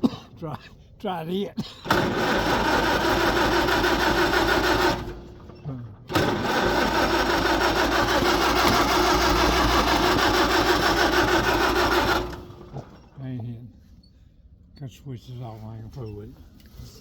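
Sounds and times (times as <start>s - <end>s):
engine cranking by starter: 1.8s - 13.3s.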